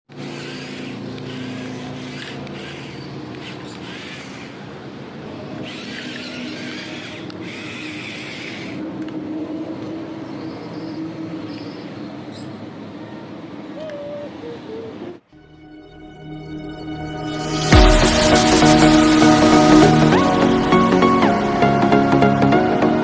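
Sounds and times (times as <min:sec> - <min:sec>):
small electric motor running: 0:00.1 - 0:04.7, 0:05.3 - 0:09.0
high motor whine: 0:00.1 - 0:12.2, 0:15.7 - 0:23.0.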